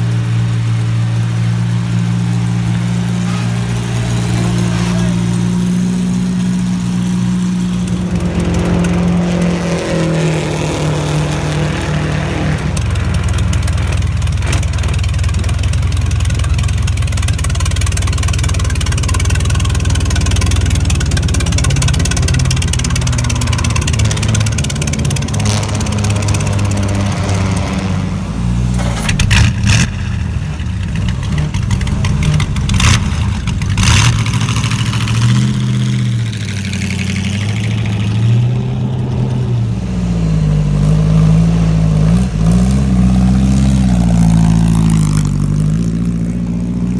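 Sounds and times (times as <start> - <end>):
engine pops: 0.0 - 39.5
racecar engine revving: 0.0 - 46.9.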